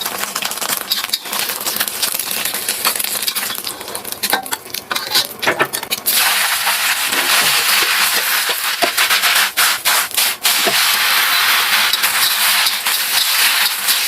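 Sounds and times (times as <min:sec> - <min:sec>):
food sizzling in hot oil: 0:00.0 - 0:14.0
utensil clicking against pan: 0:00.7 - 0:06.0.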